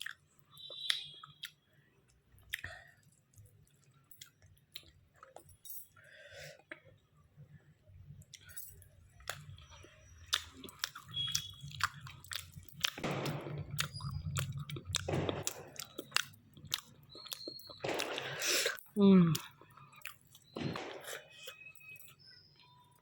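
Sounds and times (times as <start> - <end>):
chewing and biting food: 0.0 - 5.4, 9.2 - 21.3
breaths through the nose: 18.0 - 18.9.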